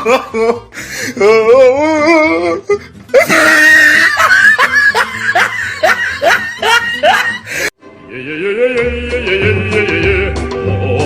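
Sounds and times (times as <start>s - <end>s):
person laughing: 0.0s - 1.4s, 2.6s - 7.7s
music: 0.0s - 11.0s
loud cry: 3.2s - 7.4s.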